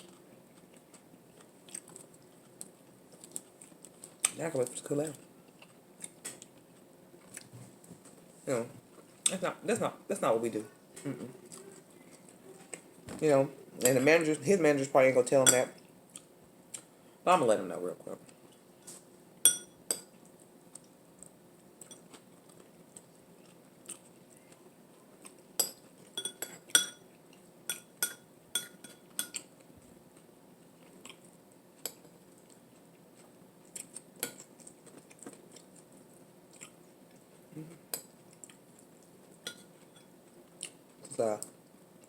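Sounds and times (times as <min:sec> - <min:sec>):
utensils clinking against dishes: 0:25.6 - 0:27.1.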